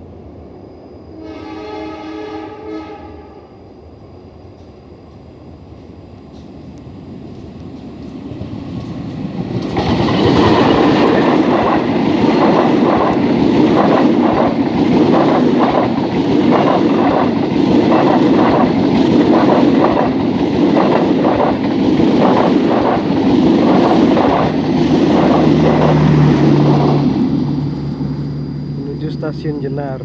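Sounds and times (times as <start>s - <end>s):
train wheels clickety-clack: 5.8s - 27.6s.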